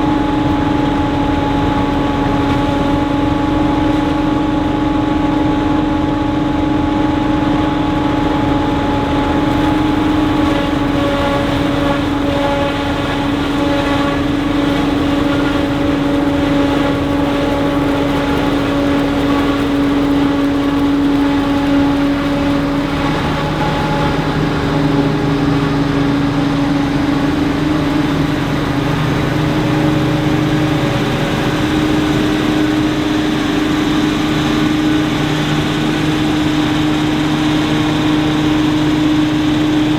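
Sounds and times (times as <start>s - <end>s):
forage harvester chopping: 9.1s - 25.8s.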